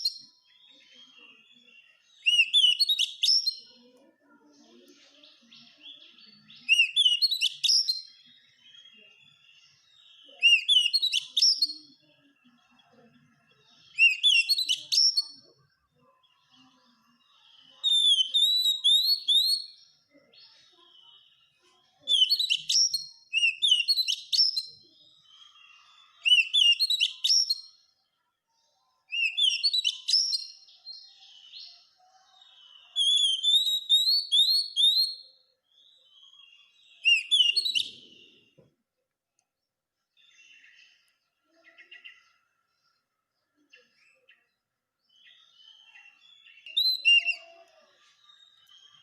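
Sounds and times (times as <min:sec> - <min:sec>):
bird singing whistled notes: 0:00.0 - 0:03.7, 0:05.4 - 0:12.2, 0:13.7 - 0:15.5, 0:17.6 - 0:19.9, 0:22.0 - 0:27.9, 0:29.1 - 0:31.8, 0:32.6 - 0:38.5, 0:44.2 - 0:49.0.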